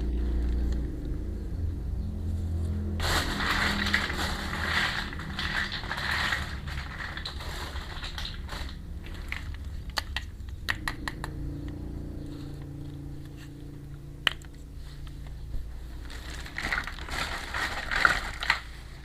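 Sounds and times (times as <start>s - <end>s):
plastic packaging crinkling: 3.0s - 10.3s, 15.9s - 19.0s
plastic toy pieces clicking: 4.7s - 11.2s.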